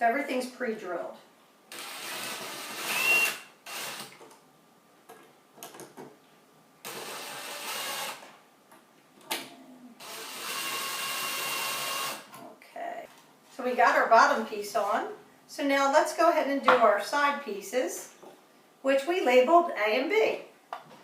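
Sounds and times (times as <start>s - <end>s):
electric screw gun whining: 1.7s - 4.2s, 6.9s - 8.3s, 10.0s - 12.3s.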